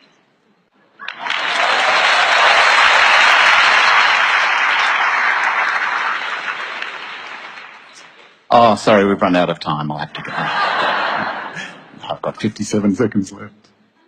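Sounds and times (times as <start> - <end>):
audience applauding: 1.0 - 8.3.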